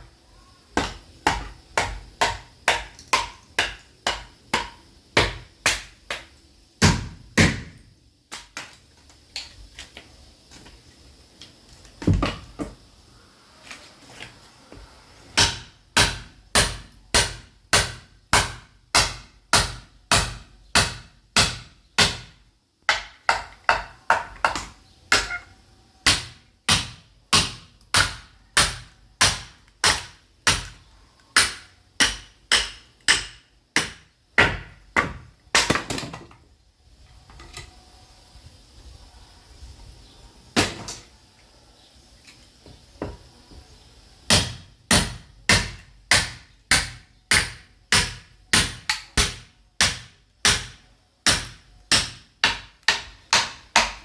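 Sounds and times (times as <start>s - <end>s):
sledgehammer striking chisel: 15.4s - 25.5s, 26.1s - 30.8s, 31.4s - 36.2s, 44.3s - 54.0s.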